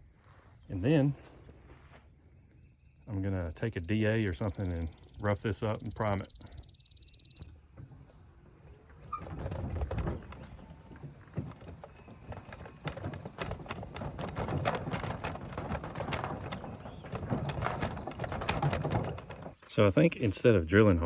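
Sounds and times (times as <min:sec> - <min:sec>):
tools and metal parts clattering: 0:03.2 - 0:07.5, 0:08.9 - 0:19.6.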